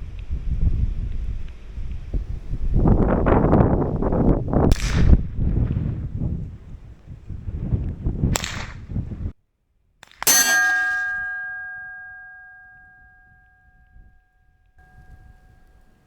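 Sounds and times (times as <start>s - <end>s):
wind buffeting microphone: 0.0s - 9.4s
steel gong clanging: 10.3s - 13.8s, 14.8s - 16.0s.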